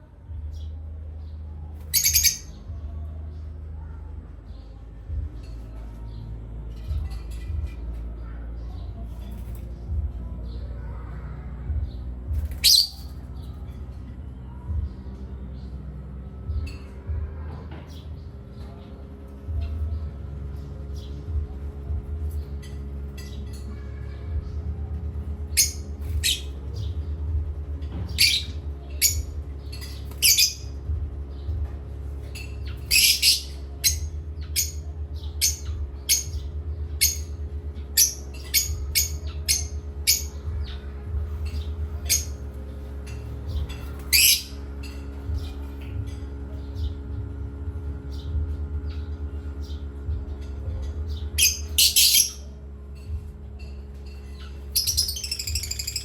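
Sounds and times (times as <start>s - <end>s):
steady low hum: 0.0s - 56.0s
parrots squawking and chirping: 1.9s - 2.5s, 12.4s - 13.3s, 28.1s - 30.8s, 32.3s - 34.8s, 37.0s - 40.8s, 41.4s - 42.5s, 43.1s - 46.1s, 51.4s - 52.5s, 54.0s - 56.0s.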